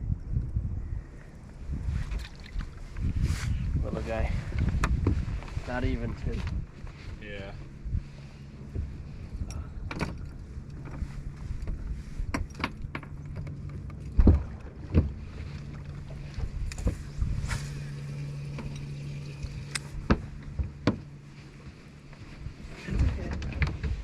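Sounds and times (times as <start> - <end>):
low electric hum: 0.0 - 24.0
knocks and clicks of gear: 4.5 - 5.6, 8.6 - 24.0.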